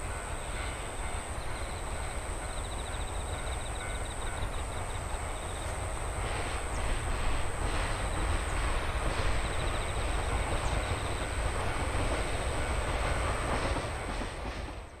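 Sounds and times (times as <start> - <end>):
crossing warning bell ringing: 0.0 - 5.0
train wheels rumbling on rails: 0.0 - 15.0.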